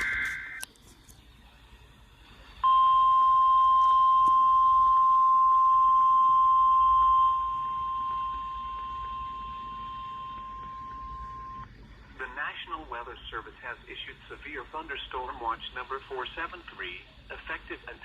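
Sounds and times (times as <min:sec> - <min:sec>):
high warning alarm tone: 0:00.0 - 0:00.6, 0:02.6 - 0:11.7
digital data tones: 0:00.0 - 0:00.7.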